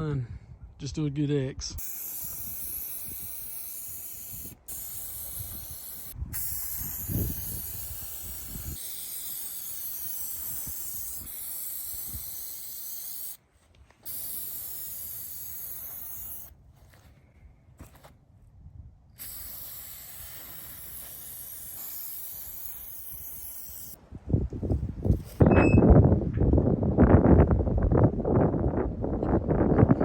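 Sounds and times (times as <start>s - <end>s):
spray paint can hissing: 1.8s - 13.4s, 14.0s - 16.5s, 19.2s - 24.0s.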